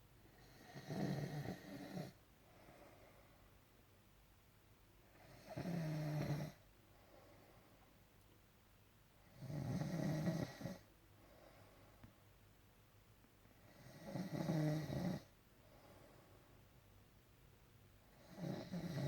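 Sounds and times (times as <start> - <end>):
quiet breathing: 0.0 - 3.8, 5.0 - 8.1, 9.1 - 12.4, 13.4 - 17.0
man snoring: 0.4 - 2.2, 5.2 - 6.6, 9.3 - 10.8, 13.7 - 15.3, 18.1 - 19.0.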